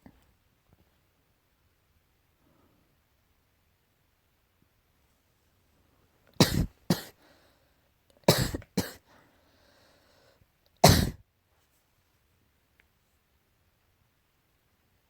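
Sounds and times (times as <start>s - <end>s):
person coughing: 6.4s - 7.2s, 8.3s - 9.1s, 10.8s - 11.2s
faint breaths: 7.1s - 7.9s, 9.0s - 10.5s.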